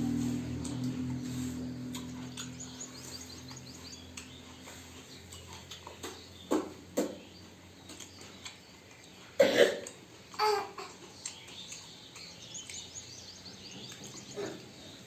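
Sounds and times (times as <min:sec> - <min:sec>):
cough-like burst: 0:09.4 - 0:09.8.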